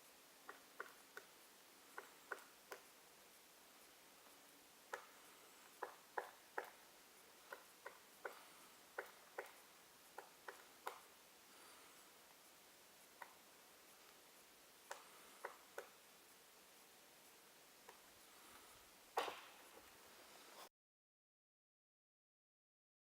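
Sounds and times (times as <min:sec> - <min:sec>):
woodpecker pecking at wood: 0:00.4 - 0:03.0, 0:04.8 - 0:12.0, 0:13.1 - 0:14.2, 0:14.8 - 0:16.1, 0:17.8 - 0:19.9.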